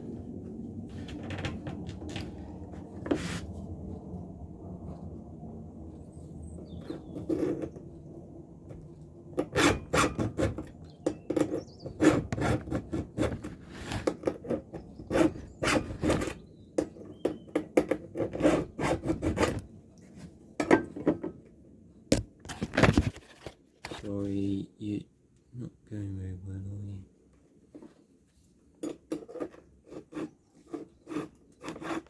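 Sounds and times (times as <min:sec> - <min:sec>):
file rasping on chainsaw chain: 0:09.4 - 0:10.8, 0:11.4 - 0:13.4, 0:18.1 - 0:19.6, 0:29.2 - 0:32.0.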